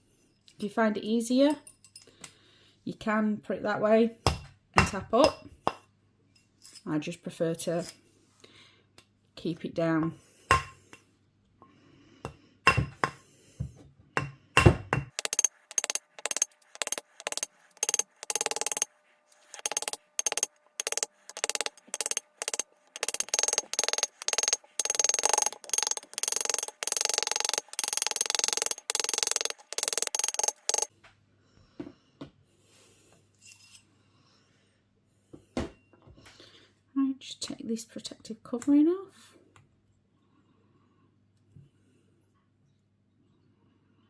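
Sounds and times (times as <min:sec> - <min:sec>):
hammer tapping metal washer: 0:15.1 - 0:18.9, 0:19.5 - 0:30.9.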